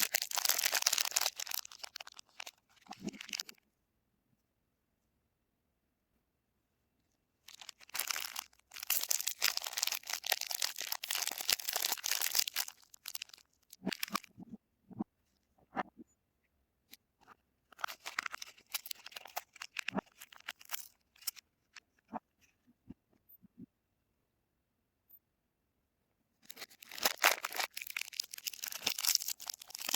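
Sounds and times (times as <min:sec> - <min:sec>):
wrapper crinkling and tearing: 0:00.0 - 0:03.6, 0:07.5 - 0:14.3, 0:17.8 - 0:21.4, 0:26.4 - 0:29.9.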